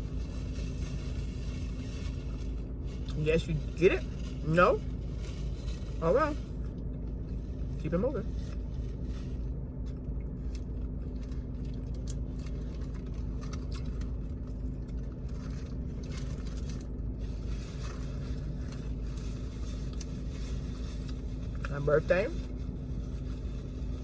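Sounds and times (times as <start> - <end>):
steady low hum: 0.0 - 24.0
small clicks and crackles: 8.3 - 24.0
chewing and eating: 8.4 - 21.7.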